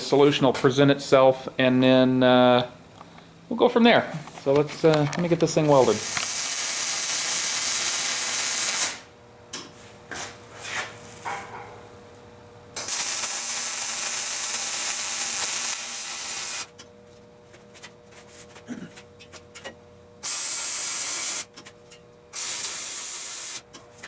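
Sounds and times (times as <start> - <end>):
faint steady hum: 0.0 - 24.0
arc welding crackling and hissing: 4.4 - 9.1, 12.8 - 16.8, 20.2 - 21.7, 22.3 - 23.8.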